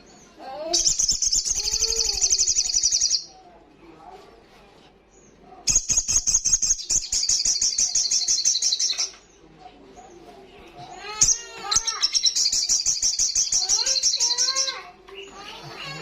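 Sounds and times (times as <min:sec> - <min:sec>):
sunbird trilling song: 0:00.8 - 0:03.3, 0:11.2 - 0:16.0.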